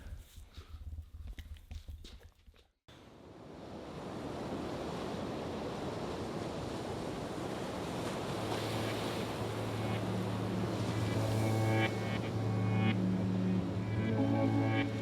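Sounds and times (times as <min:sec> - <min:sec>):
steady rushing noise: 0:08.4 - 0:15.0
low steady tone: 0:08.7 - 0:15.0
music: 0:08.8 - 0:15.0.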